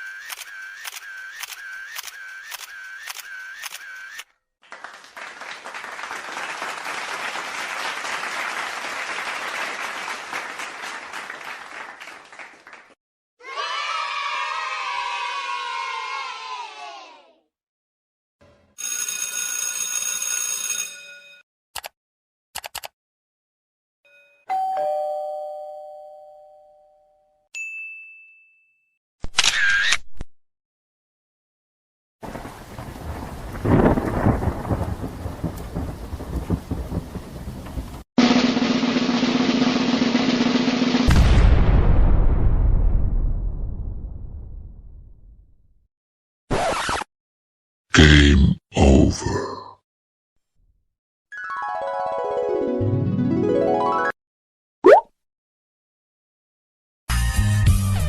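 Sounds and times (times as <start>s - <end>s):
camera shutter clicking: 0.0s - 4.2s, 29.3s - 29.8s
applause: 4.6s - 13.0s
doorbell chime: 24.1s - 28.9s
loud noisy burst: 38.2s - 41.8s.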